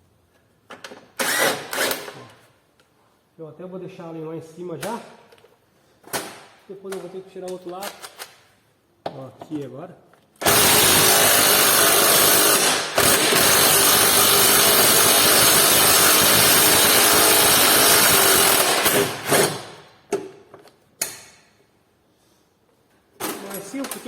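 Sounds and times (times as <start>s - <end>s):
power tool running: 10.4s - 19.8s.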